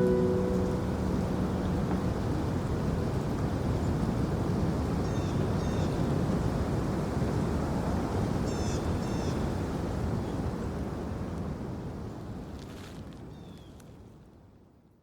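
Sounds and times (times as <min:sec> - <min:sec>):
low outdoor rumbling: 0:00.0 - 0:03.1.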